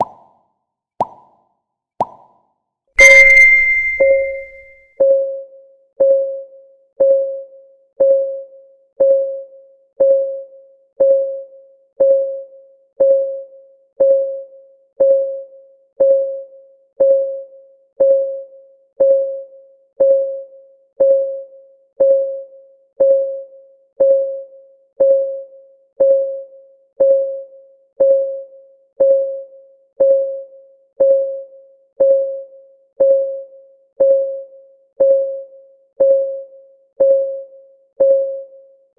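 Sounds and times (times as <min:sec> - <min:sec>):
countdown timer ticking: 0:03.0 - 0:04.6.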